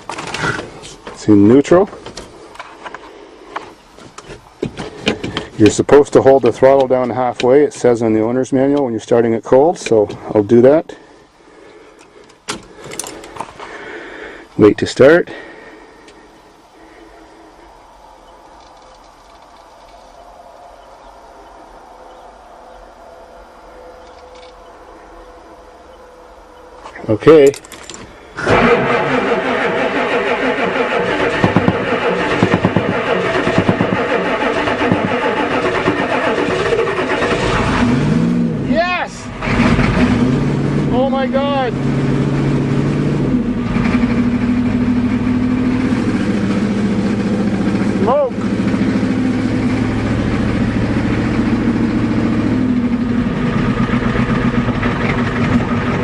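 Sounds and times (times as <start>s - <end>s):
diesel engine cranking on starter: 26.8s - 38.6s, 39.3s - 56.0s.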